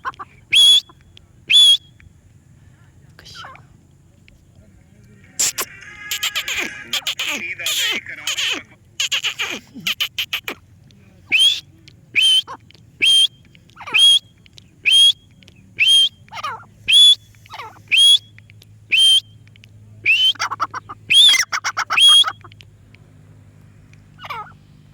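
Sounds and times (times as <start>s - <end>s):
parrot whistled calls: 0.5s - 2.0s, 5.4s - 10.5s, 11.3s - 19.4s, 20.0s - 22.6s.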